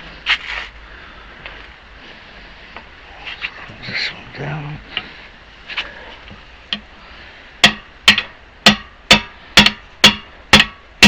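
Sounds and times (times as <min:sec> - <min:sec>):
hammer blows on steel: 0:07.6 - 0:11.0.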